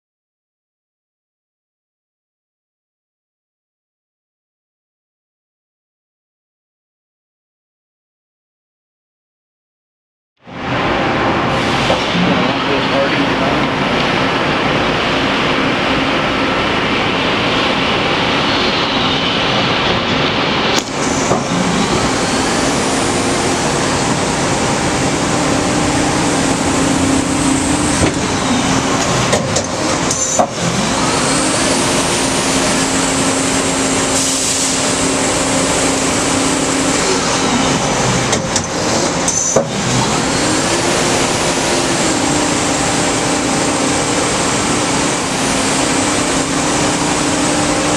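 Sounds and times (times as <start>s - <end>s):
lathe machine running: 10.5s - 47.9s
sharp machine clunks: 28.9s - 30.7s.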